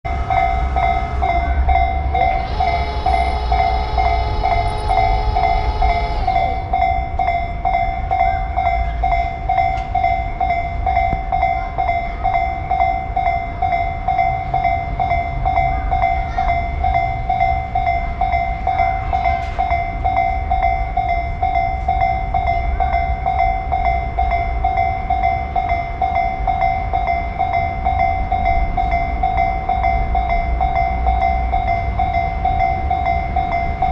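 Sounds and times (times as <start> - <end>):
passing train rumble: 0.0 - 33.9
railroad crossing warning bell: 0.0 - 33.9
train horn: 0.1 - 7.2.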